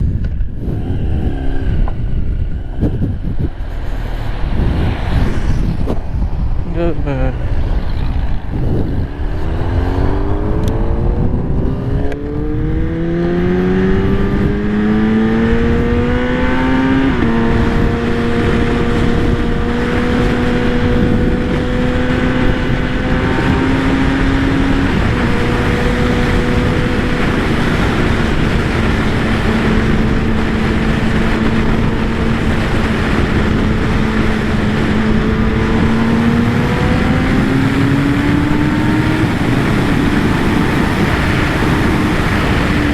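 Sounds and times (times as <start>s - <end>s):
wind rushing over microphone: 0.0s - 42.9s
sport bike engine revving: 0.4s - 5.6s, 8.4s - 42.9s.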